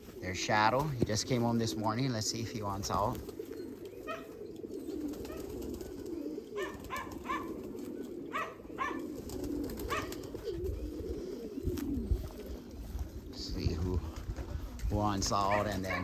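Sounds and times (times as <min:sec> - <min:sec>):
pigeons cooing: 0:00.0 - 0:16.0
short high pigeon calls: 0:02.8 - 0:13.4, 0:15.3 - 0:16.0.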